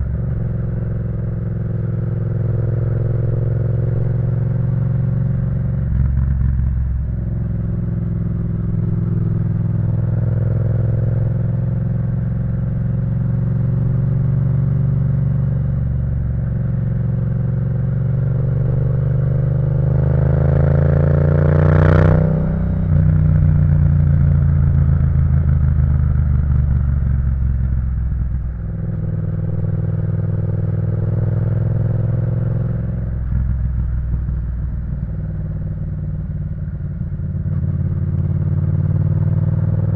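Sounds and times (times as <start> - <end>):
motorcycle engine revving: 16.6 - 39.9.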